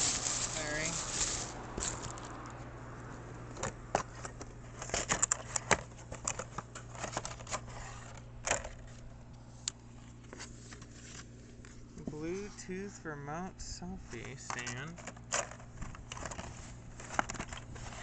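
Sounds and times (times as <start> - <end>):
cardboard box being handled: 0.0 - 2.2.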